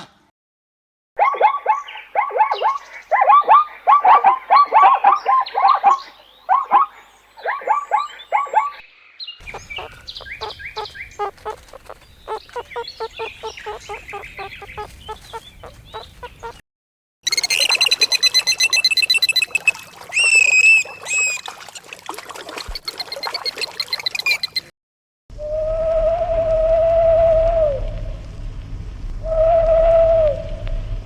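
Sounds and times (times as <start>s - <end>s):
animal repeating short calls: 9.4s - 16.6s
background hiss: 9.4s - 16.6s
geese honking: 9.4s - 16.6s
high-pitched animal call: 9.4s - 16.6s.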